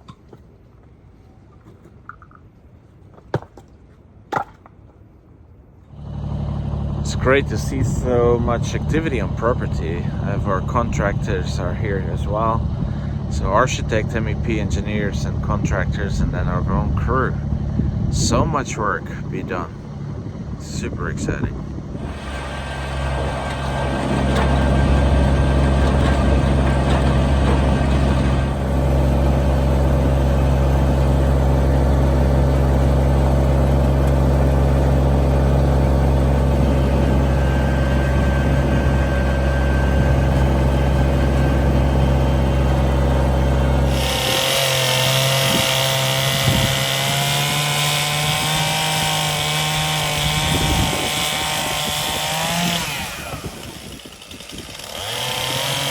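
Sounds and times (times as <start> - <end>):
large engine droning: 5.8 - 55.9
chainsaw engine: 5.9 - 55.9.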